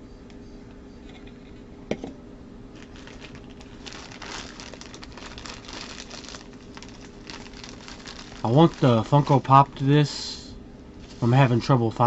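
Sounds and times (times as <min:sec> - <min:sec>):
plastic packaging crinkling: 0:02.7 - 0:10.1.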